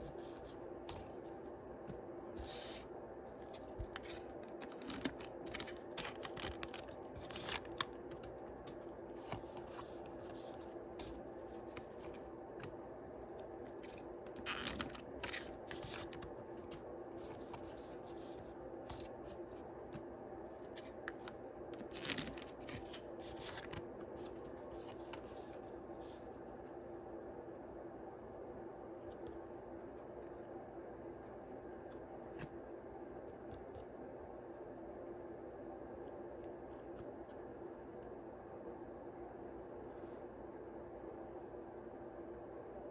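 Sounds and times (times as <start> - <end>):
cards being handled: 3.5 - 12.8, 20.7 - 25.6
foil packs crinkling: 3.8 - 8.3, 13.7 - 16.2, 21.8 - 23.8.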